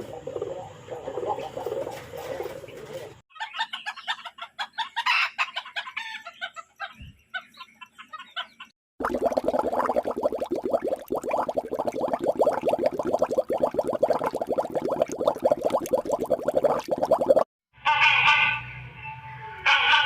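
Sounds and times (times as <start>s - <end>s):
chickens clucking: 0.2s - 8.6s.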